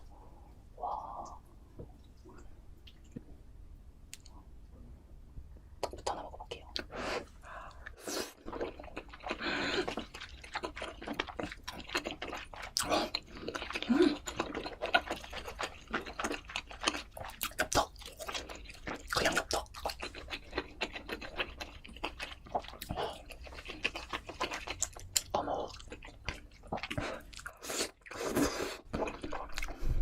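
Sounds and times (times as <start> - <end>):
person chewing loudly: 7.6 - 30.0.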